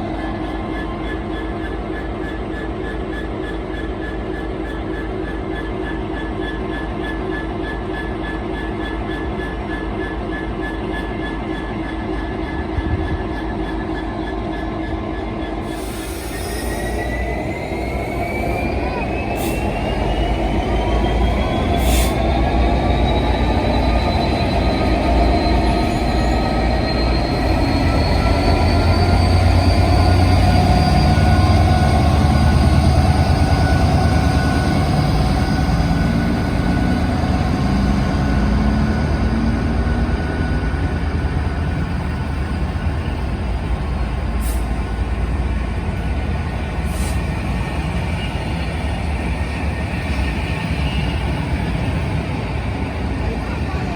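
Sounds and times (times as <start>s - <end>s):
train rumbling on rails: 0.0s - 53.9s.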